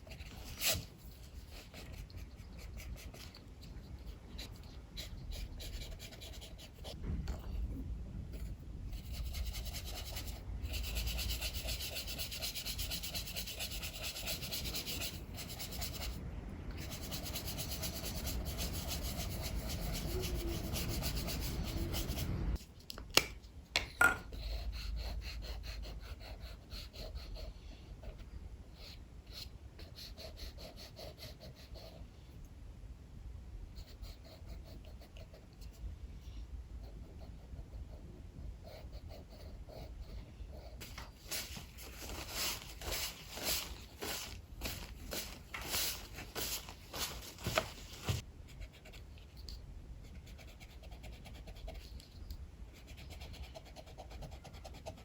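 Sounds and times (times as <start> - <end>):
pencil strokes scratching on paper: 0.0 - 7.0, 8.4 - 16.2, 16.8 - 22.6, 36.8 - 49.4
low wind rumble: 3.8 - 13.0, 13.7 - 22.6.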